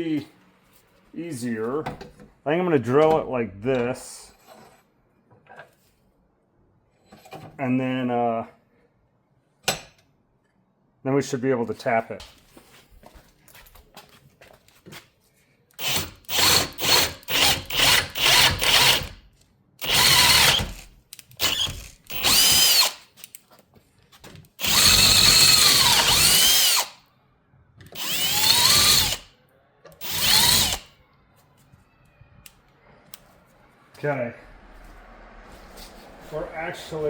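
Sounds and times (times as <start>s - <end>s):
power drill boring metal: 15.8s - 19.2s, 19.8s - 20.8s, 21.4s - 23.0s, 24.6s - 27.0s, 28.0s - 29.3s, 30.0s - 30.9s.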